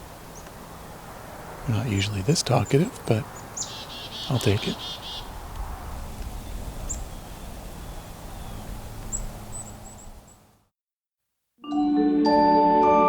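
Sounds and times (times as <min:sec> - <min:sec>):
high bird notes: 0:01.9 - 0:05.3.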